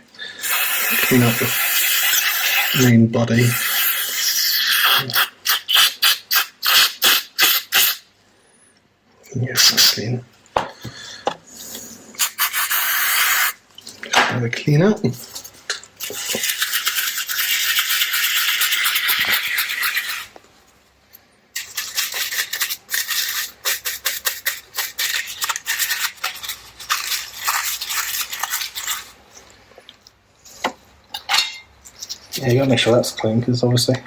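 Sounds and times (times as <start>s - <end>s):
steady spray hiss: 0.4s - 8.0s.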